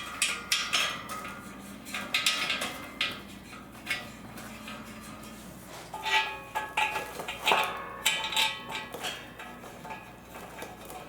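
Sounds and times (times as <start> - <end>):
metal bolts clinking: 6.0 - 10.2.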